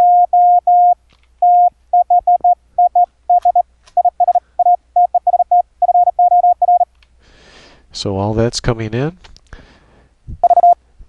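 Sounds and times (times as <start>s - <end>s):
morse code tone: 0.0s - 6.9s, 10.4s - 10.8s.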